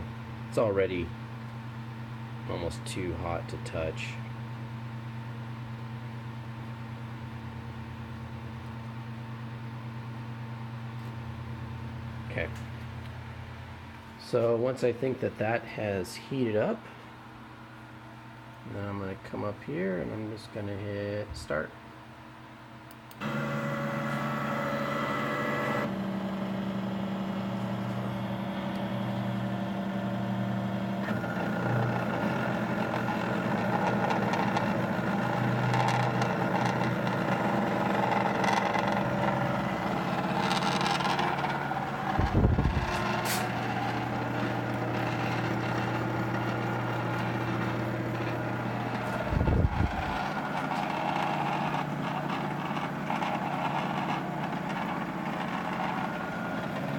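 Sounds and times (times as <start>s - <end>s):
stepper motors whining: 23.1s - 56.9s.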